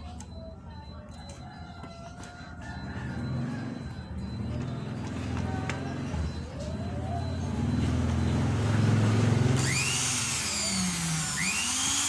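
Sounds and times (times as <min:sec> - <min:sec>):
rooster crowing: 0:01.2 - 0:04.2
low motor hum: 0:02.3 - 0:12.0.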